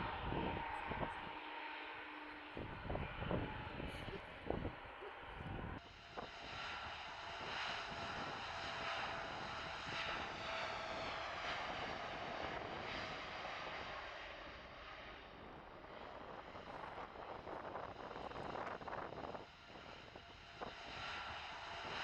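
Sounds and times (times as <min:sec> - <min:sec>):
jet airliner engines rushing: 0:00.0 - 0:22.0.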